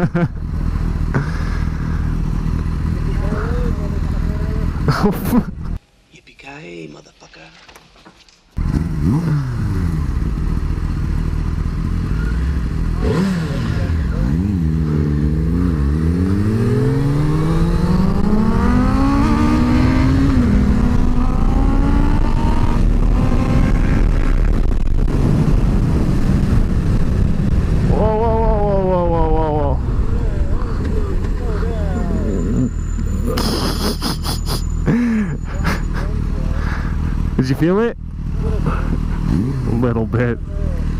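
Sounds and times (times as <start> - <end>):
motorcycle engine accelerating: 0.0 - 5.8, 8.6 - 40.9
wind rushing: 16.4 - 31.2.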